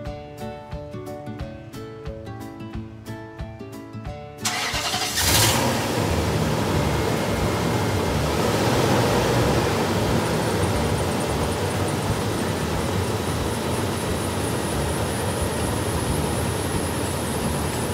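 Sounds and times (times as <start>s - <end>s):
background music: 0.0s - 17.9s
car engine cranking and running: 4.4s - 17.9s.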